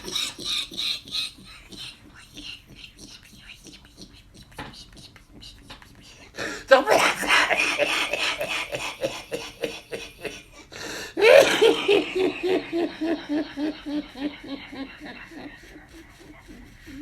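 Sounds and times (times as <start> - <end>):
person laughing: 0.0 - 3.2, 6.6 - 17.0.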